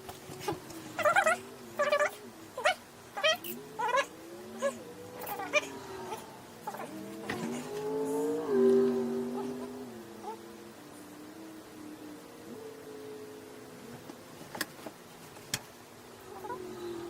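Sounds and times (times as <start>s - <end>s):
monkey squealing calls: 1.0s - 5.8s.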